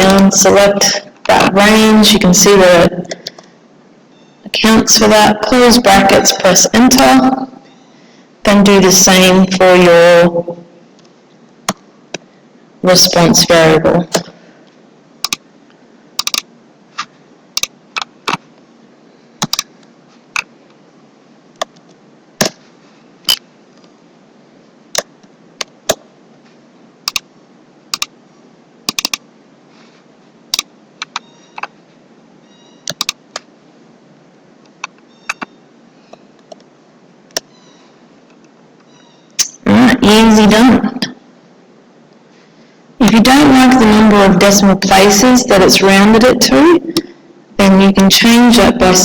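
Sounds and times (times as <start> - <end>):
mouse clicks: 15.2 - 15.4, 16.2 - 16.4, 19.4 - 19.7, 28.9 - 29.2, 32.9 - 33.2
keyboard keystrokes: 16.2 - 16.4, 19.4 - 19.7, 28.9 - 29.2, 32.9 - 33.2.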